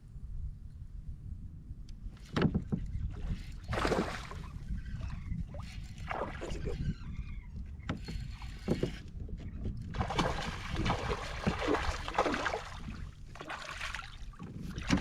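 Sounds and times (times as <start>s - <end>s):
low steady rumble: 0.0s - 2.2s
water splashing and sloshing: 2.2s - 7.1s, 7.7s - 15.0s.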